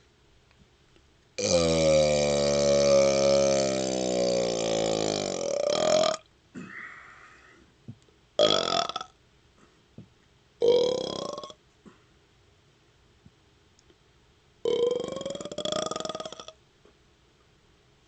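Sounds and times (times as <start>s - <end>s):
man burping: 1.4s - 7.1s, 8.4s - 9.1s, 10.6s - 12.0s, 14.7s - 16.6s.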